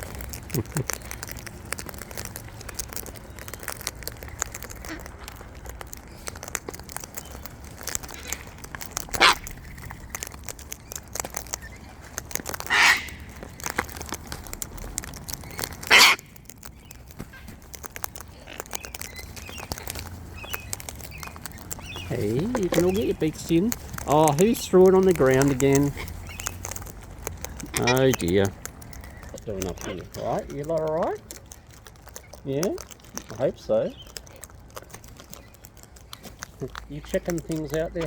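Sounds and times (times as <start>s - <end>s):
cockatoos screeching: 0.0s - 13.8s, 14.7s - 16.4s, 17.3s - 30.6s
small clicks and crackles: 0.0s - 38.0s.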